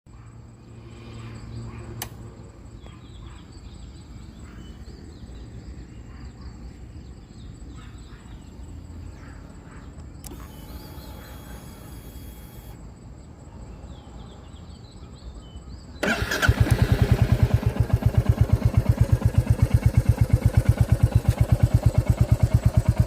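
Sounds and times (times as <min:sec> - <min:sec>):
sharp click: 0:02.0 - 0:02.2, 0:10.0 - 0:12.8.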